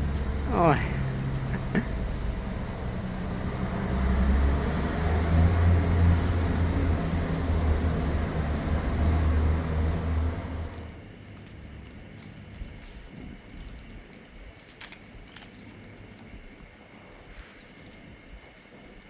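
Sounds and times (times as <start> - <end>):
vehicle engine running: 0.0 - 12.8.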